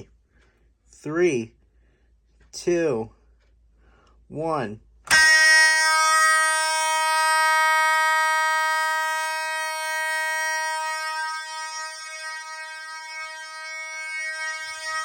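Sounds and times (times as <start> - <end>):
fire alarm horn buzzing: 5.1 - 15.0.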